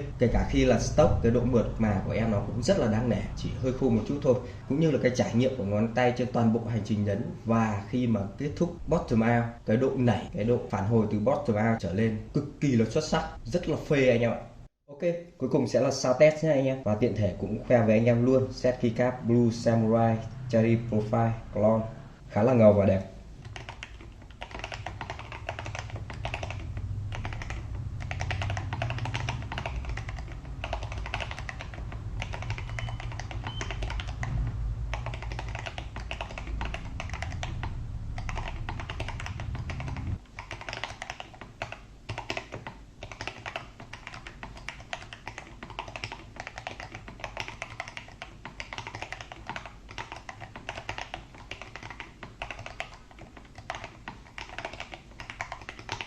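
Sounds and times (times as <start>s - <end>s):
low hum: 0.0s - 4.8s, 19.2s - 22.5s, 24.6s - 40.2s
mechanical keyboard typing: 23.4s - 56.0s.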